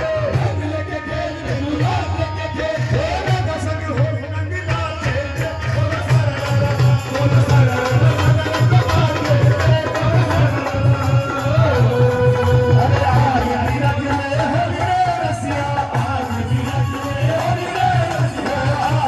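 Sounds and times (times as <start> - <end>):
fast steady drum beat: 0.0 - 19.0.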